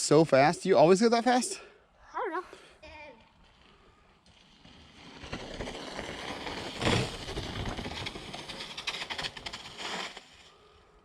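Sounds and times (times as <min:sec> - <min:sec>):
bicycle rolling over dirt trail: 0:03.1 - 0:11.0.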